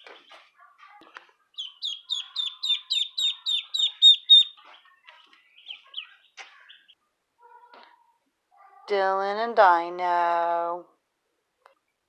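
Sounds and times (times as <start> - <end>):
duckling peeping: 1.5 - 7.0.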